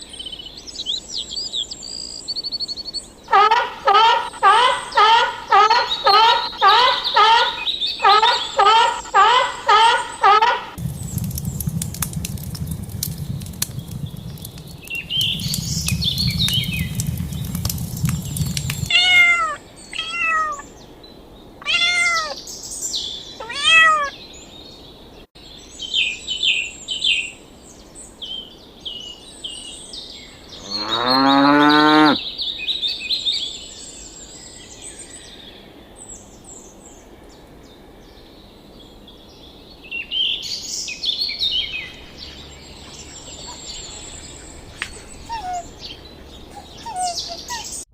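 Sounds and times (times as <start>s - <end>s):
bird chirps: 0.1s - 20.3s, 40.0s - 47.9s
low rumble: 10.8s - 19.0s, 41.4s - 46.9s
cat meowing: 18.9s - 20.6s, 21.6s - 22.4s, 23.4s - 24.1s
cow mooing: 30.6s - 32.2s.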